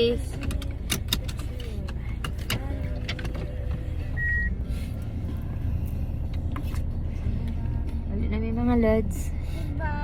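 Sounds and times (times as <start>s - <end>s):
vehicle low rumble: 0.0s - 10.0s
short high beep: 4.2s - 4.6s.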